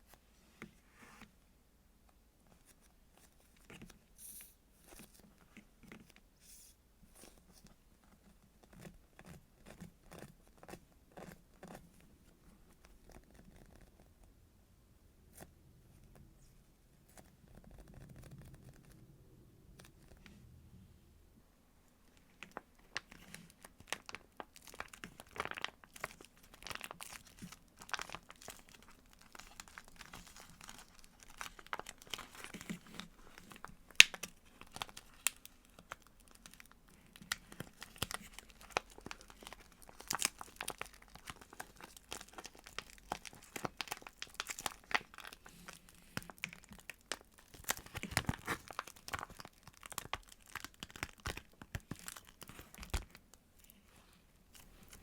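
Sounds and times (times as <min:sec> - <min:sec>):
squishy toys crinkling: 0:22.1 - 0:53.8.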